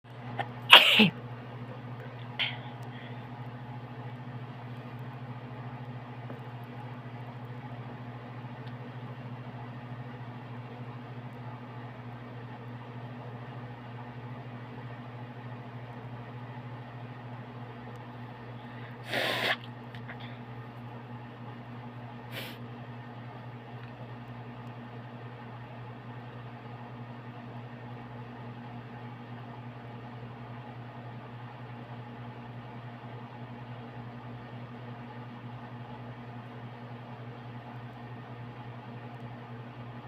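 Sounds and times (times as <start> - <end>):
steady low hum: 0.1 - 40.0
person sneezing: 0.7 - 1.2, 19.0 - 20.4, 22.3 - 22.6.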